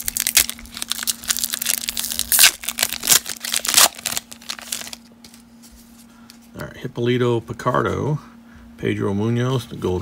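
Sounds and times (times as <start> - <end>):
wrapper tearing and crinkling: 0.0 - 5.1.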